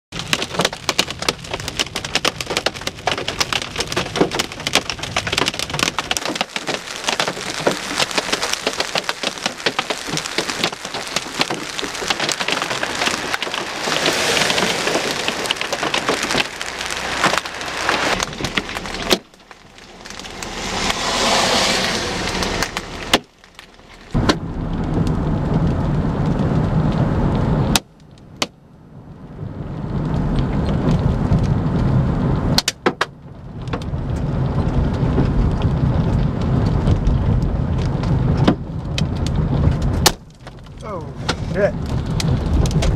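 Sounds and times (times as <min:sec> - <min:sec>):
hail clattering on a vehicle: 0:00.1 - 0:21.4, 0:32.6 - 0:42.9
rain hiss: 0:01.9 - 0:27.6
low rumble: 0:03.0 - 0:42.9.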